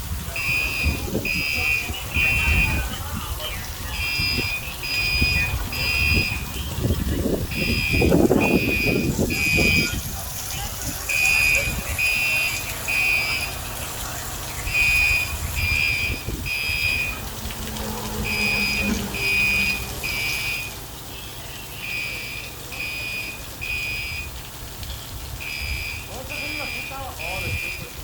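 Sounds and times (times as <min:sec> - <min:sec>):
low rumbling noise: 0:00.0 - 0:21.1
fire alarm beeping: 0:00.3 - 0:10.1, 0:11.1 - 0:13.7, 0:14.5 - 0:17.2, 0:18.2 - 0:24.4, 0:25.4 - 0:28.0.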